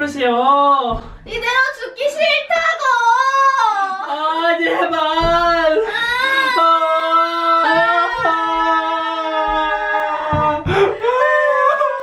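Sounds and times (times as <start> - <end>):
breathy burst: 10.6 - 11.5.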